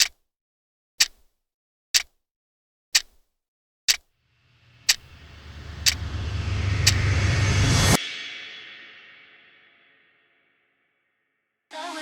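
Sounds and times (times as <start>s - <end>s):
sharp clock-like ticks: 0.0s - 0.2s, 1.0s - 1.3s, 2.0s - 2.2s, 3.0s - 3.2s, 3.9s - 8.0s
rumbling swell: 4.4s - 10.4s.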